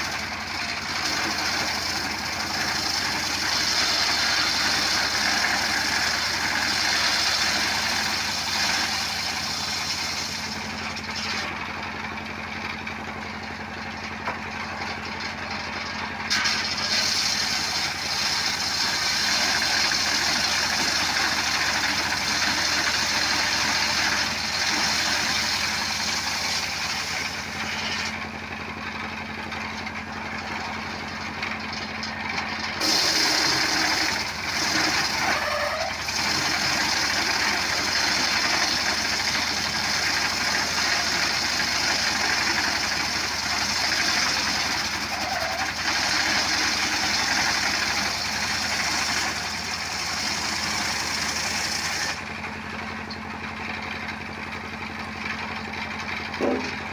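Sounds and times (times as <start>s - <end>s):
motorcycle engine running: 52.2s - 56.9s.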